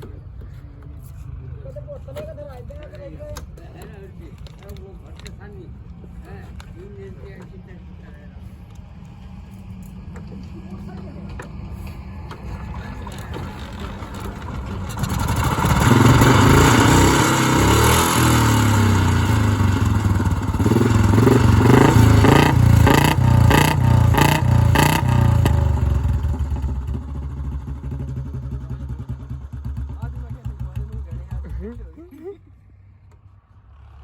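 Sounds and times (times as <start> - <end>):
motorcycle engine revving: 7.8 - 32.0.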